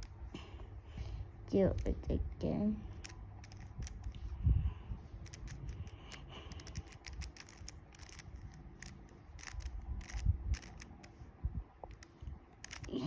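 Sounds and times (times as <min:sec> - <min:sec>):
puzzle cube plastic clicks: 0:02.9 - 0:04.2, 0:05.2 - 0:11.2, 0:11.9 - 0:13.0.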